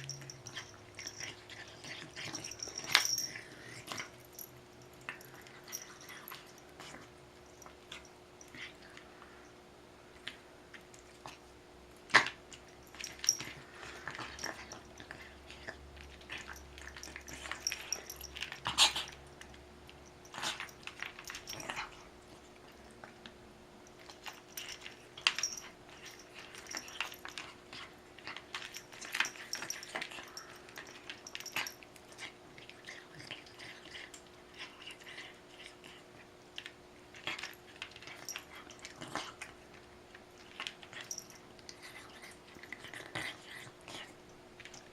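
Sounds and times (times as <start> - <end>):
pet chewing and licking: 10.1 - 44.9.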